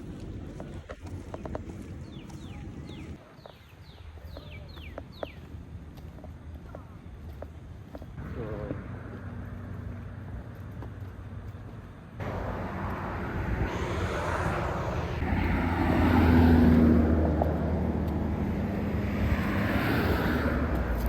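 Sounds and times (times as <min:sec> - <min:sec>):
passing vehicle engine: 0:08.2 - 0:10.6, 0:12.2 - 0:21.0.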